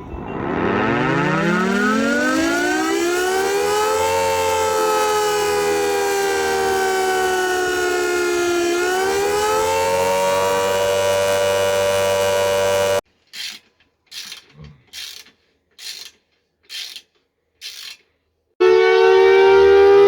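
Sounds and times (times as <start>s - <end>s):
air raid siren winding up: 0.0s - 13.0s, 18.6s - 20.0s.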